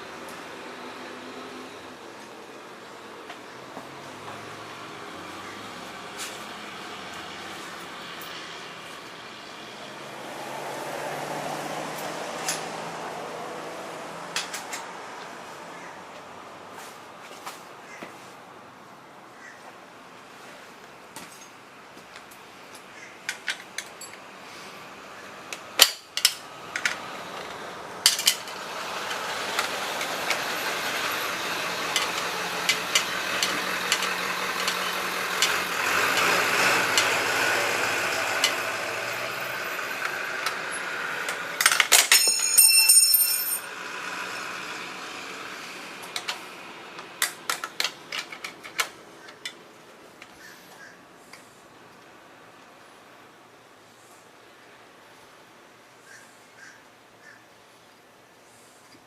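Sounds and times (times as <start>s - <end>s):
hand tools and metal parts clinking: 5.8s - 9.1s, 11.8s - 12.8s, 14.3s - 15.3s, 21.1s - 24.7s, 25.5s - 43.9s, 45.9s - 50.4s.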